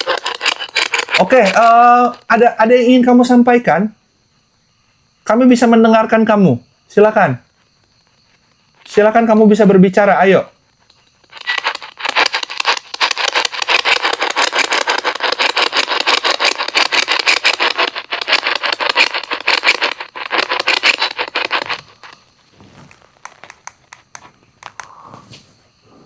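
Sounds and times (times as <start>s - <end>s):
faint clicks: 22.9s - 25.0s.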